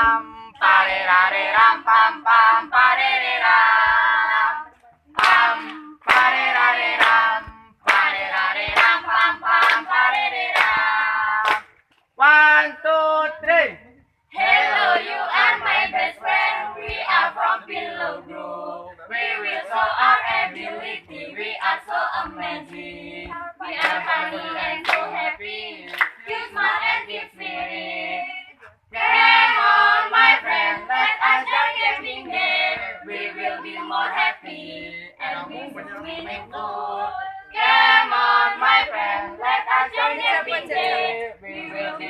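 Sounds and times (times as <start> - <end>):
group singing a cheer song: 0.0 - 13.7, 14.3 - 42.0
hand claps: 5.1 - 12.1, 22.6 - 25.2, 25.9 - 26.4.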